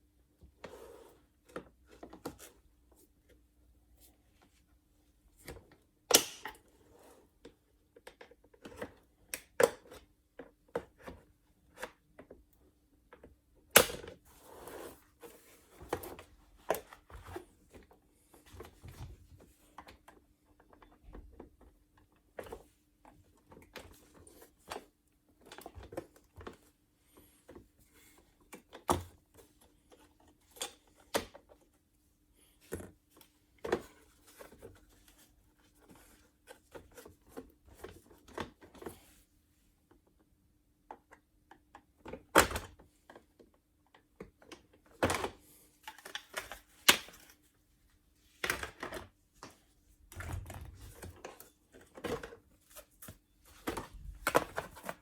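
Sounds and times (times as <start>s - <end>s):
clicks and knocks of plastic parts: 40.9s - 47.4s, 48.3s - 55.0s.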